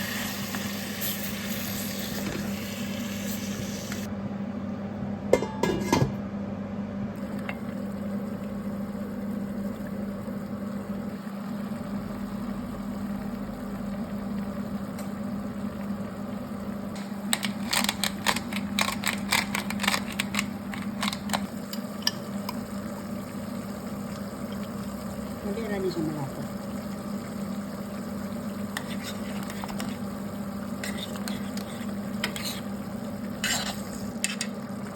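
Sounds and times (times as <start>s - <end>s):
food simmering in a pan: 7.2s - 17.3s, 21.5s - 34.9s
spoon scraping a pan: 28.7s - 30.0s, 30.8s - 32.8s, 33.4s - 34.6s.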